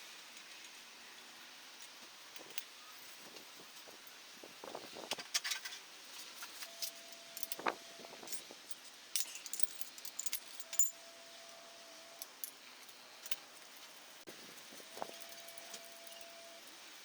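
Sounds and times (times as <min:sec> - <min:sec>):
metal tools clinking: 0:05.3 - 0:13.7, 0:14.9 - 0:16.5.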